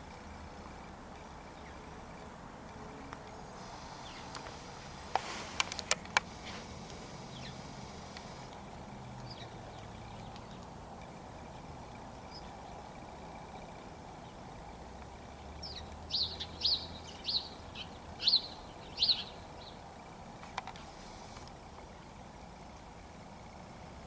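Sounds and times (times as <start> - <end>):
outdoor background noise: 0.0 - 24.0
bird chirping: 2.9 - 5.2, 6.5 - 8.5, 9.2 - 11.3, 15.4 - 19.9.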